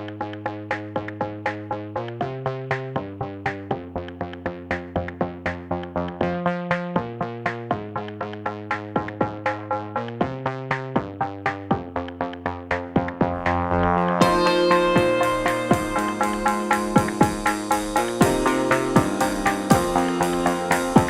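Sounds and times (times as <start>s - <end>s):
electronic music with steady beat: 0.0s - 21.0s
synthesizer chords: 5.5s - 21.0s.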